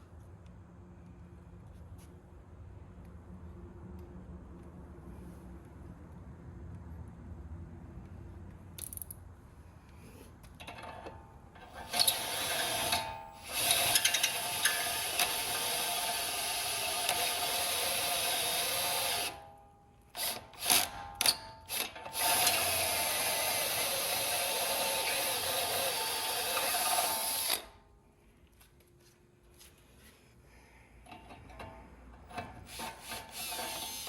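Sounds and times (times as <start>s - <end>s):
power drill boring metal: 11.6s - 19.4s, 20.2s - 27.7s, 32.4s - 34.0s.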